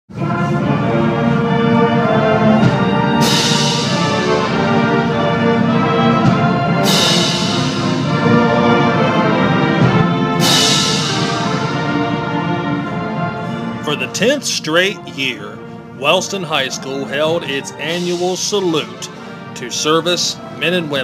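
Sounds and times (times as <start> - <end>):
band with brass and timpani: 0.1 - 21.0
cymbal crashes: 2.6 - 13.8, 16.8 - 19.6.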